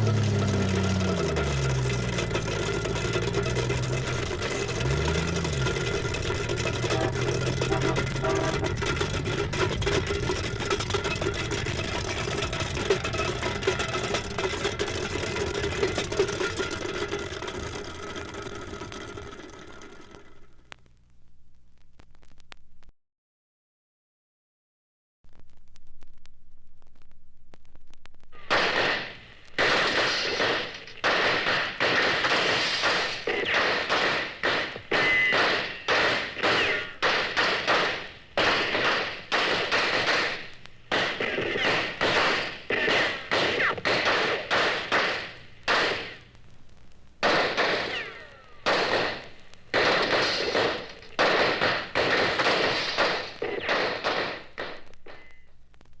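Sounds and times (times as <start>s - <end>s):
engine running steadily: 0.0s - 20.6s
heavy thumps: 0.0s - 20.9s.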